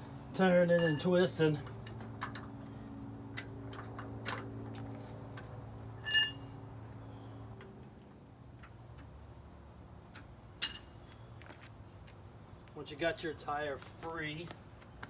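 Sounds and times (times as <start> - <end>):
ringing metal clink: 0.8 - 1.1, 6.0 - 6.5, 10.6 - 11.0.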